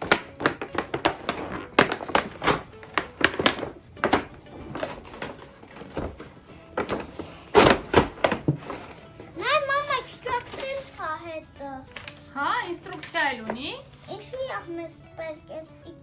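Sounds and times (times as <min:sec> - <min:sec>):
faint background music: 0:00.0 - 0:16.0
cardboard box knocks and scrapes: 0:03.2 - 0:09.3.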